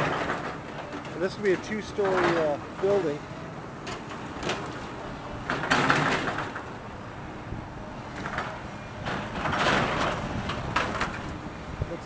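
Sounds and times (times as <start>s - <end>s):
demolition machine breaking building: 0.0s - 3.2s, 4.0s - 6.8s, 8.2s - 11.3s
debris crunching and clattering: 3.9s - 6.7s, 8.2s - 11.3s.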